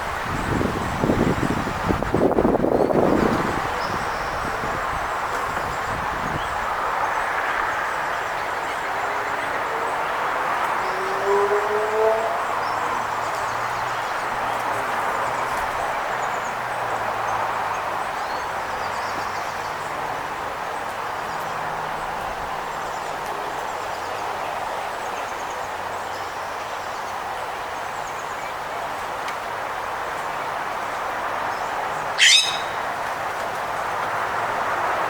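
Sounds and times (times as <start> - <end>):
steady rushing outdoor noise: 0.0 - 35.0
faint songbird chirps: 31.6 - 32.9.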